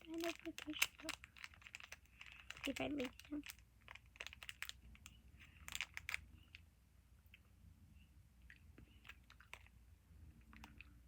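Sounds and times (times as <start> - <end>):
person chewing candy: 8.5 - 9.8.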